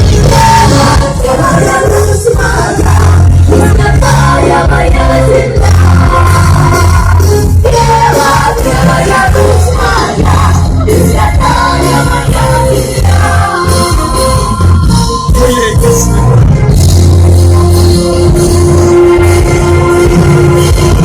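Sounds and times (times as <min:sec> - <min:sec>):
person singing: 0:00.0 - 0:16.7
band playing with heavy bass: 0:00.0 - 0:21.0.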